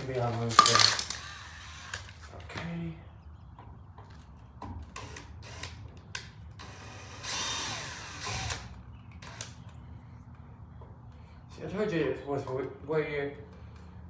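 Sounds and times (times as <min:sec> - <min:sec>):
cordless drill running in reverse: 0:06.6 - 0:09.6.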